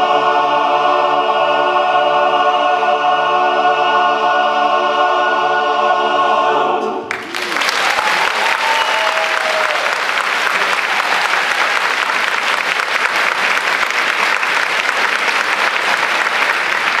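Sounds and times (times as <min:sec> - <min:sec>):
audience applauding: 0:07.1 - 0:17.0.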